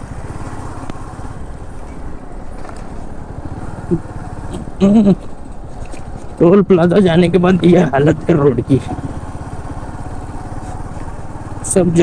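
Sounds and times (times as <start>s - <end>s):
motorcycle engine running: 0.0s - 12.0s
person speaking: 6.4s - 9.1s.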